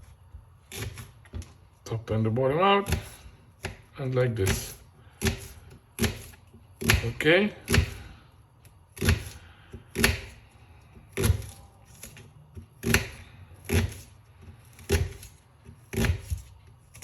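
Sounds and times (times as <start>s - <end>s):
knife chopping on board: 0.7s - 1.1s, 2.8s - 8.1s, 8.9s - 10.4s, 11.0s - 17.0s.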